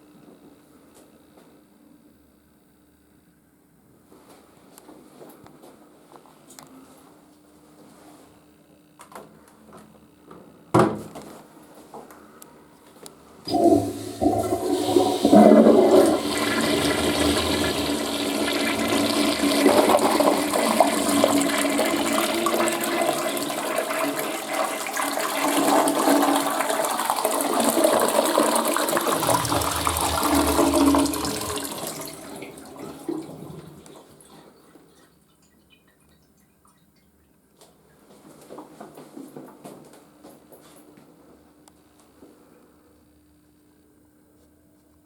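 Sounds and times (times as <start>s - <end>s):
toilet flushing: 13.5s - 36.1s.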